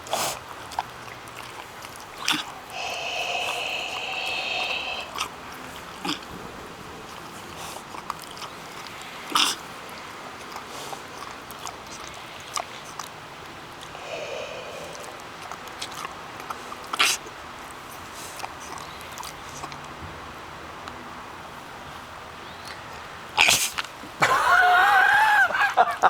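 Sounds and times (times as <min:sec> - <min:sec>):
pig snorting breath blasts: 0:00.0 - 0:13.2, 0:13.8 - 0:19.7, 0:23.4 - 0:23.9
pig snuffling and sniffing: 0:00.0 - 0:20.0, 0:22.5 - 0:24.2
pig high-pitched call: 0:02.2 - 0:05.3, 0:09.3 - 0:09.6.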